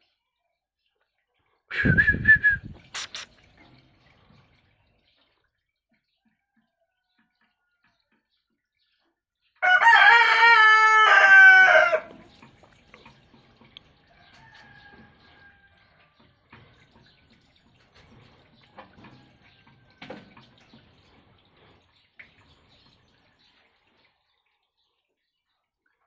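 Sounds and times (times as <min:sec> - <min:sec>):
rooster crowing: 0:09.6 - 0:12.1.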